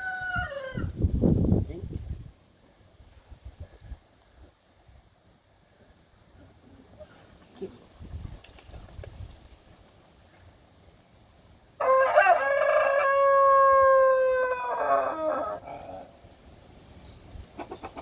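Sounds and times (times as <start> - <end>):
rooster crowing: 0.0 - 1.0, 11.8 - 15.8.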